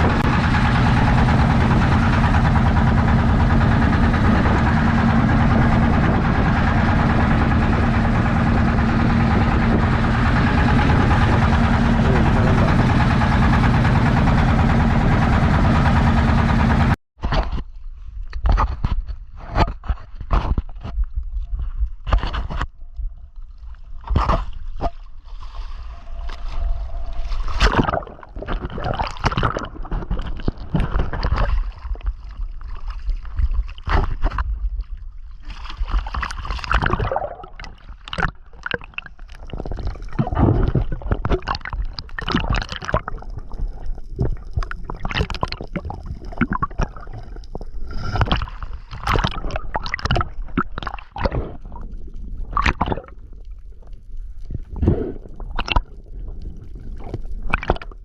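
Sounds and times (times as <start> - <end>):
sea water gurgling and sloshing: 0.0 - 58.0
water splashes and knocks: 27.4 - 51.7, 54.8 - 55.9, 57.0 - 58.0.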